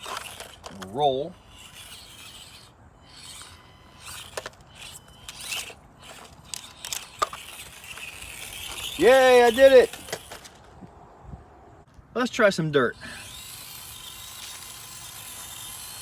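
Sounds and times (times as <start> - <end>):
toy motor and gears whirring: 0.0 - 10.8, 12.8 - 16.0
tyres clicking and scraping on rock: 0.0 - 10.8.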